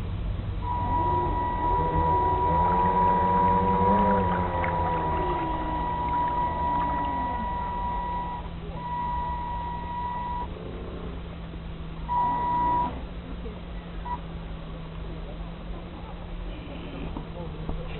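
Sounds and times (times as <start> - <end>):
constant low hum: 0.0 - 17.9
electric motor whining: 0.6 - 10.5.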